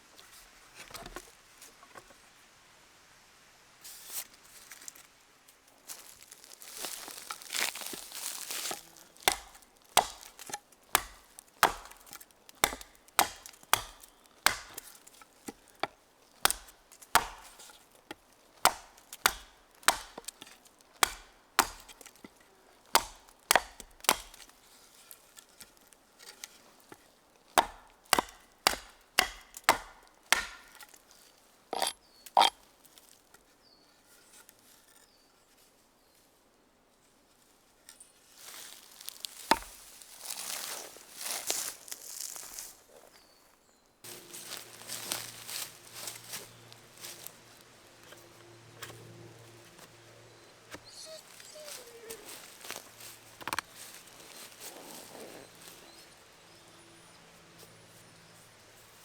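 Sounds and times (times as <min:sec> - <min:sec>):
blade chopping wood: 0:06.8 - 0:24.6, 0:27.5 - 0:31.0, 0:31.8 - 0:32.5, 0:39.4 - 0:39.8, 0:52.3 - 0:54.7.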